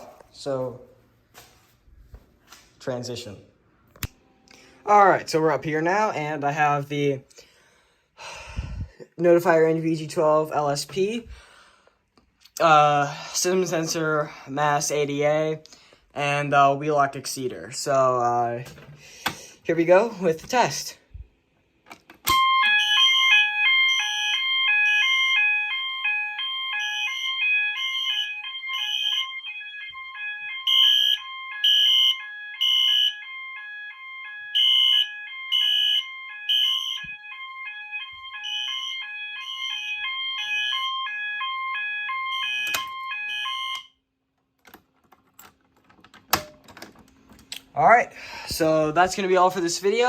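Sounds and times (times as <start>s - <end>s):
rapidly stepping alarm tones: 22.3s - 44.0s
fire alarm horn blasts: 22.3s - 44.1s.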